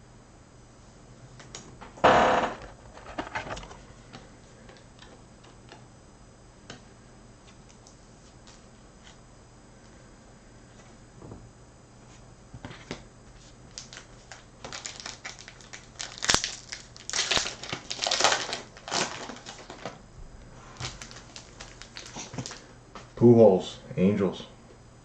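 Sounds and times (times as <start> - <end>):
foil wrapper tearing and crinkling: 13.7 - 20.0, 20.8 - 22.6.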